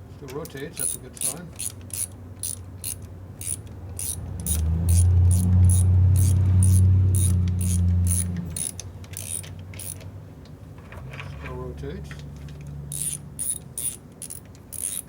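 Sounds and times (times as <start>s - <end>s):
ratchet wrench clicking: 0.3s - 10.1s, 12.9s - 15.0s.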